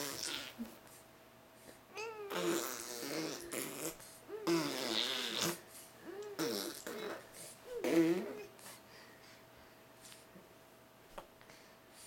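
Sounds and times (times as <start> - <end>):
baby blowing raspberries: 0.0 - 0.7, 2.0 - 8.6.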